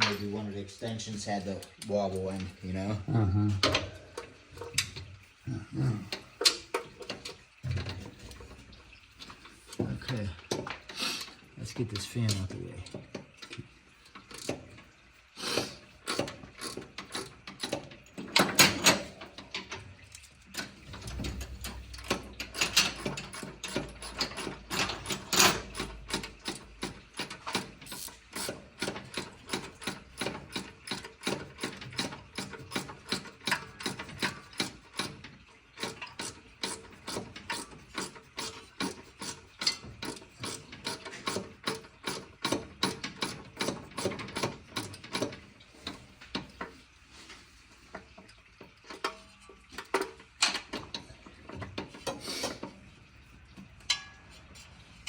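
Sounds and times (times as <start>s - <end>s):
ratchet wrench clicking: 27.8s - 28.5s.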